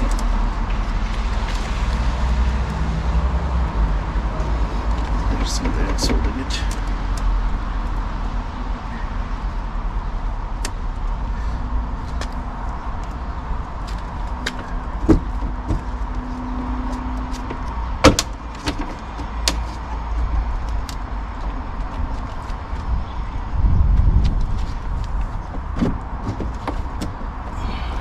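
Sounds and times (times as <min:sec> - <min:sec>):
steady low rumble: 0:00.0 - 0:28.0
car door panel knocks and clicks: 0:14.4 - 0:16.0, 0:17.4 - 0:19.7.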